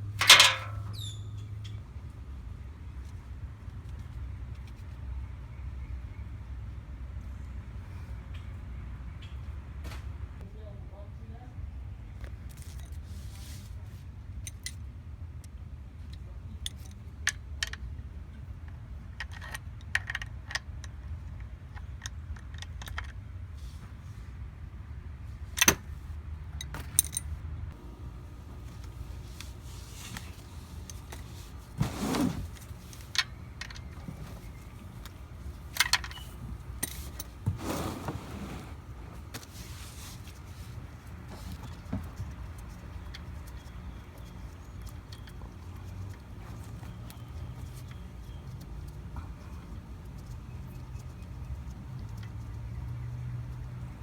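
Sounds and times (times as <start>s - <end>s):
metal tools clinking: 0.2s - 1.1s.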